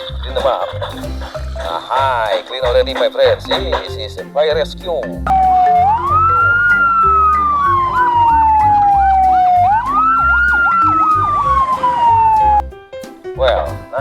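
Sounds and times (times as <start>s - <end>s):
background music with bass beat: 0.0s - 12.7s
emergency vehicle siren wailing: 5.3s - 12.6s.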